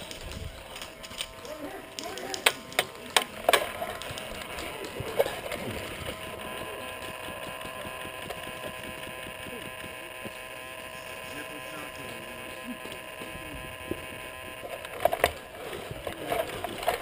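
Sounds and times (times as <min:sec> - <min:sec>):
airsoft gun cracks: 0:00.0 - 0:05.6.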